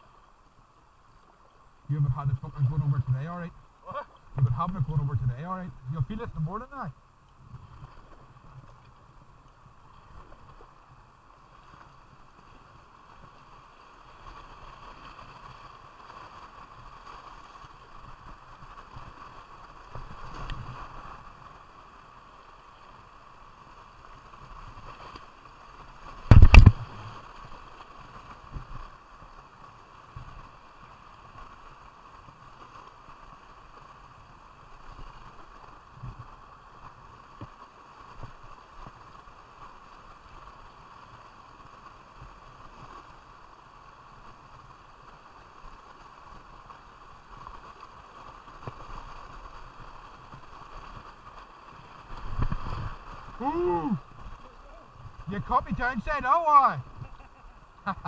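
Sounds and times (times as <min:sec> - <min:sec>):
river water rushing: 0:08.0 - 0:58.0
paddle knocks and splashes: 0:26.2 - 0:27.2
loud thump: 0:26.3 - 0:26.8.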